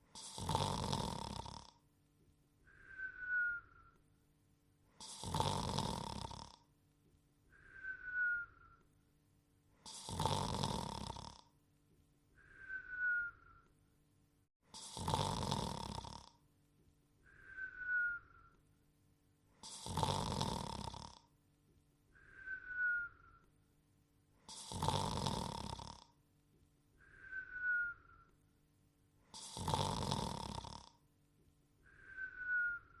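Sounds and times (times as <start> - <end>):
cartoon snoring: 0.0 - 1.8, 5.0 - 6.7, 9.8 - 11.5, 14.7 - 16.4, 19.6 - 21.3, 24.4 - 26.2, 29.3 - 31.0
short downward-sliding whistle: 2.8 - 3.9, 7.6 - 8.8, 12.4 - 13.6, 17.3 - 18.5, 22.2 - 23.4, 27.0 - 28.3, 31.9 - 33.0.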